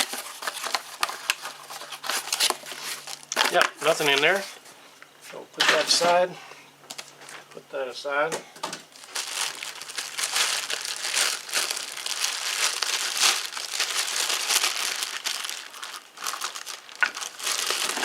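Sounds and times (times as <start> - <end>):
packaging crinkling and rustling: 0.0 - 4.6, 6.9 - 7.6, 8.6 - 18.0.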